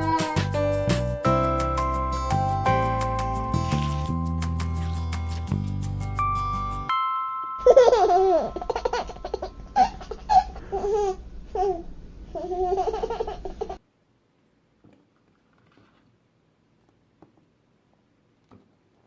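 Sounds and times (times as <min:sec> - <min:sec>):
music: 0:00.0 - 0:07.7
child giggling: 0:07.6 - 0:13.8.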